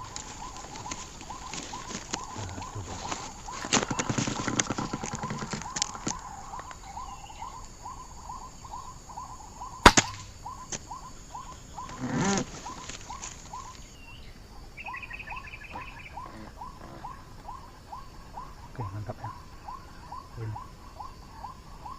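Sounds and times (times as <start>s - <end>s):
rustle: 0.0s - 21.9s
sharp loud crack: 9.8s - 10.4s.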